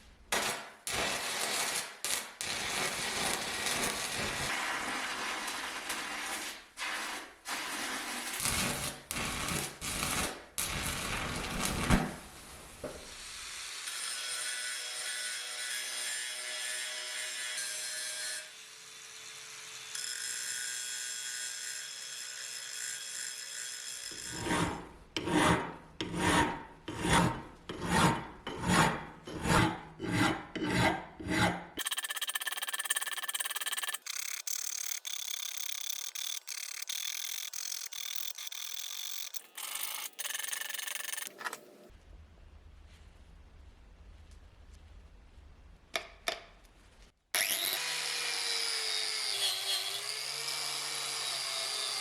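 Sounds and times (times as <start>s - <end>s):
hand tool rasping strokes: 22.4s - 41.4s.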